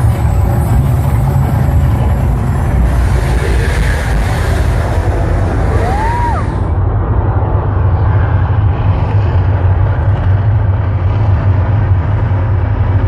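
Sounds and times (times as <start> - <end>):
deep rumbling: 0.0 - 13.0
whistle rising and falling: 5.6 - 6.7.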